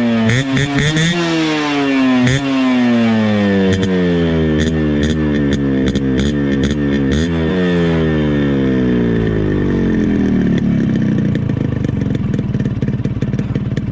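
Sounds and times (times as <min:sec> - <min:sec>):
two-stroke engine revving and idling: 0:00.0 - 0:13.9.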